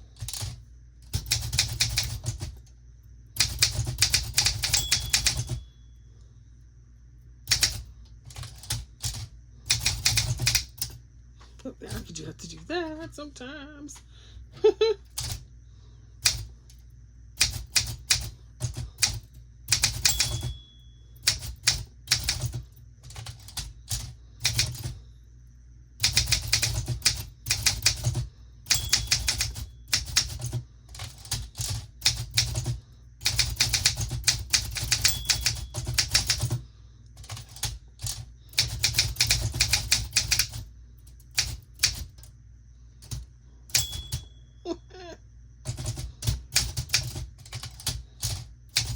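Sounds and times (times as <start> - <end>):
typewriter key strikes: 3.4 - 5.6, 19.7 - 20.6, 26.1 - 32.7, 33.3 - 36.6
typewriter bell ring: 4.4 - 5.7, 19.7 - 21.4, 28.7 - 30.1, 34.8 - 36.2, 43.7 - 44.4.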